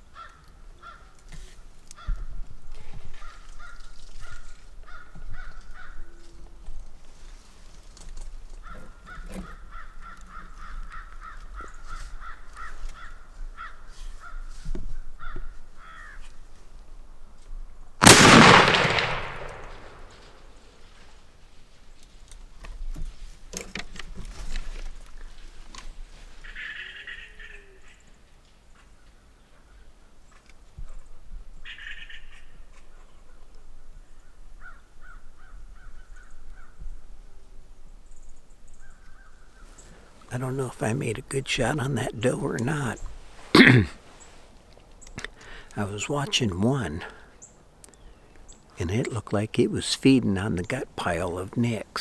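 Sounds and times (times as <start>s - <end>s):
crows cawing: 0.1s - 1.2s, 8.6s - 14.4s, 15.2s - 16.3s, 26.4s - 27.8s
shotgun blast: 18.0s - 20.4s.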